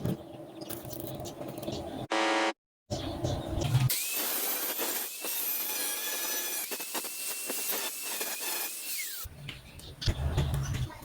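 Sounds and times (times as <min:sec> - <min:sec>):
angle grinder grinding steel: 0:03.9 - 0:09.3.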